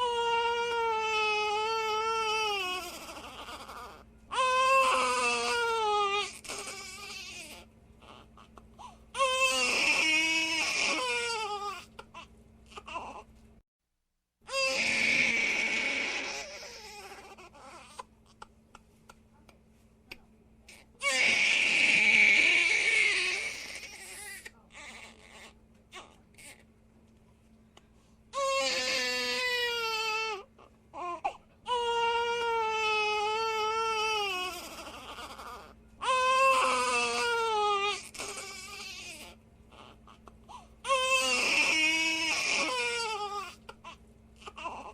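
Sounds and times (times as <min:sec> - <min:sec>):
baby crying: 0:00.0 - 0:13.3, 0:14.5 - 0:18.5, 0:20.7 - 0:26.6, 0:28.4 - 0:44.9
baby sobbing and catching breath: 0:08.2 - 0:09.2.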